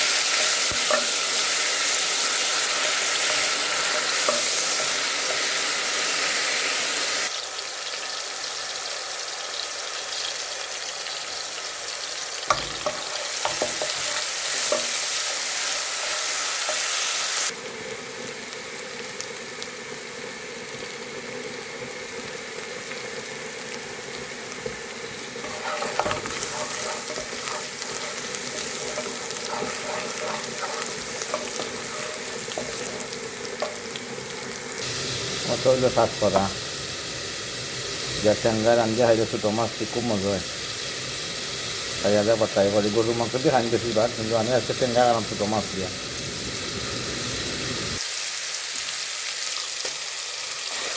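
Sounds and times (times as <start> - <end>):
food sizzling in a pan: 0.0 - 50.9
spoon clinking and scraping: 0.3 - 2.0, 2.6 - 5.0, 12.5 - 16.9, 25.4 - 33.9.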